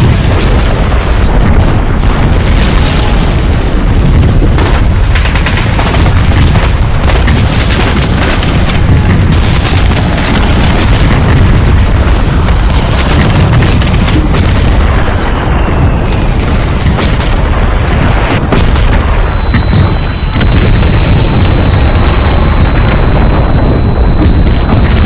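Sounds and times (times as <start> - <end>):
explosions and artillery booms: 0.0 - 25.0
gunfire cracks: 0.0 - 25.0
steady high whine: 19.0 - 25.0.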